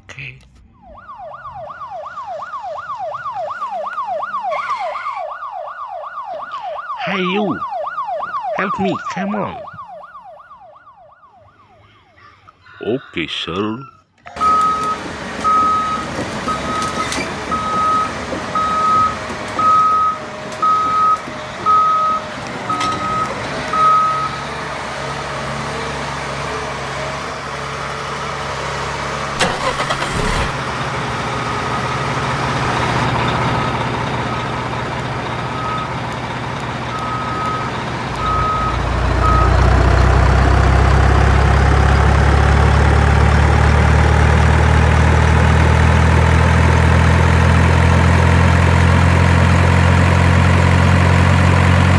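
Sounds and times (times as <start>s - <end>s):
truck reversing beeper: 0.7s - 10.4s, 11.3s - 51.9s
truck engine running: 12.8s - 51.9s.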